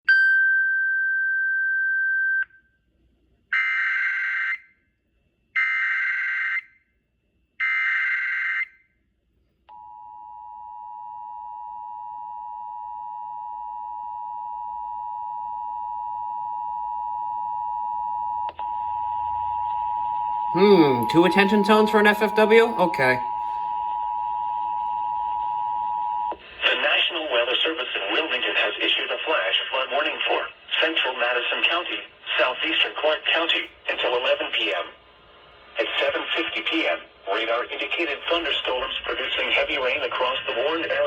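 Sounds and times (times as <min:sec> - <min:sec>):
steady high tone: 0:19.3 - 0:26.0
two-tone attention signal: 0:20.4 - 0:24.0.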